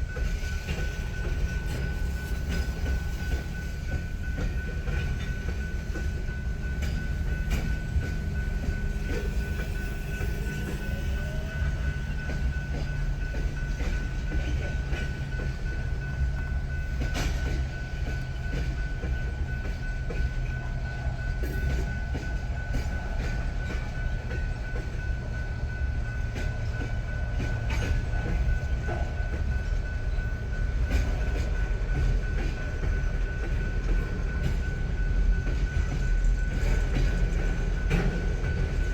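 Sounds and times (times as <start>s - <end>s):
low train rumble: 0.0s - 38.9s
steady high ringing tone: 0.0s - 38.9s
train wheels clicking over rail joints: 0.0s - 38.9s.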